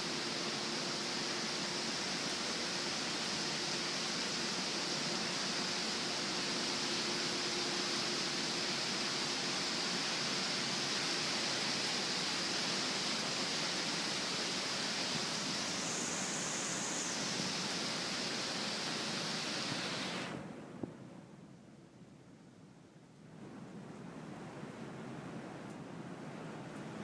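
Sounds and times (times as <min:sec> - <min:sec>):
heavy rain: 0:00.0 - 0:20.5.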